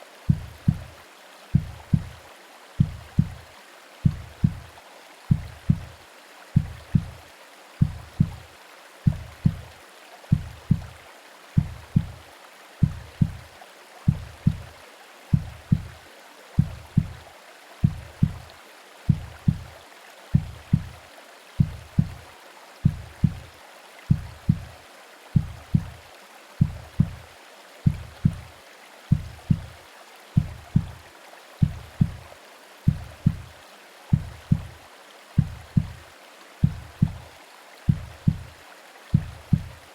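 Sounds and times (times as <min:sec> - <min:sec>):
soft white noise hiss: 0:00.0 - 0:39.9
slow heartbeat thumps: 0:00.3 - 0:00.9, 0:01.5 - 0:02.2, 0:02.8 - 0:04.7, 0:05.3 - 0:06.0, 0:06.6 - 0:07.2, 0:07.8 - 0:08.4, 0:09.1 - 0:11.0, 0:11.6 - 0:12.2, 0:12.8 - 0:13.5, 0:14.1 - 0:14.7, 0:15.3 - 0:16.0, 0:16.6 - 0:17.2, 0:17.8 - 0:18.5, 0:19.1 - 0:21.0, 0:21.6 - 0:22.2, 0:22.8 - 0:24.8, 0:25.4 - 0:26.0, 0:26.6 - 0:28.5, 0:29.1 - 0:29.8, 0:30.4 - 0:32.3, 0:32.9 - 0:33.5, 0:34.1 - 0:34.8, 0:35.4 - 0:36.0, 0:36.6 - 0:37.3, 0:37.9 - 0:38.5, 0:39.1 - 0:39.9.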